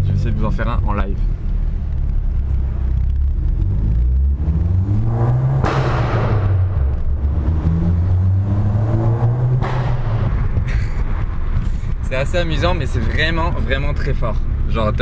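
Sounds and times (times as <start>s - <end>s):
car engine revving: 1.3s - 13.8s
loud exhaust pop: 4.9s - 11.8s.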